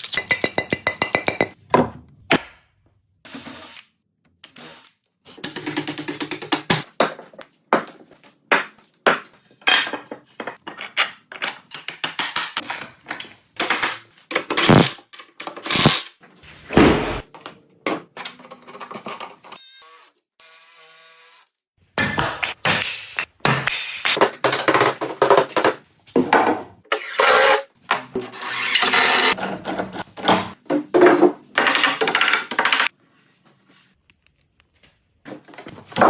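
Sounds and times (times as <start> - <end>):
woodworking tools clicking: 5.4 - 6.8.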